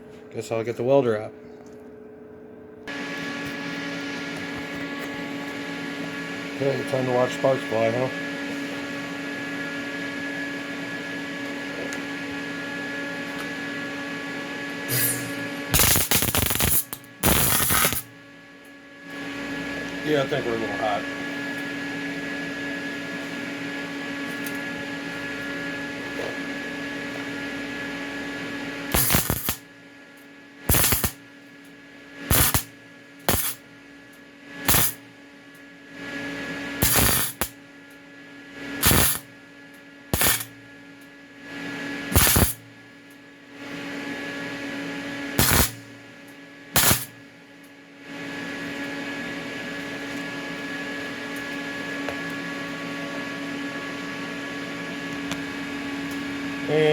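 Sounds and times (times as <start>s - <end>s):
steady electrical hum: 0.0s - 56.9s
welding arc crackle: 14.9s - 18.1s, 28.9s - 29.7s, 30.7s - 31.3s, 32.3s - 33.6s, 34.6s - 35.0s, 36.8s - 37.6s, 38.8s - 39.3s, 40.1s - 40.6s, 42.1s - 42.7s, 45.4s - 45.9s, 46.8s - 47.2s.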